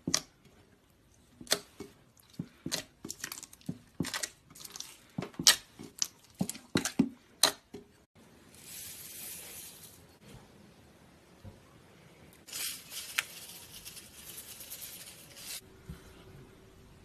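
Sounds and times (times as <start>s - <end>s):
soft hissing rustle: 8.5s - 10.2s.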